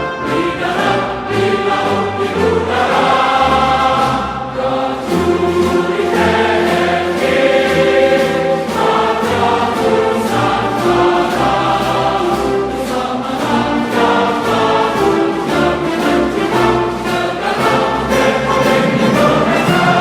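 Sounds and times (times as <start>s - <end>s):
choir singing sustained chords: 0.0s - 20.0s
steady beat: 5.1s - 20.0s.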